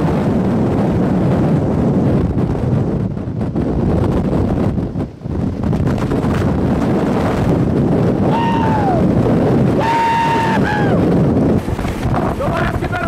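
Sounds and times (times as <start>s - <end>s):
strong wind buffeting microphone: 0.0s - 13.0s
high-pitched wails: 9.8s - 11.0s.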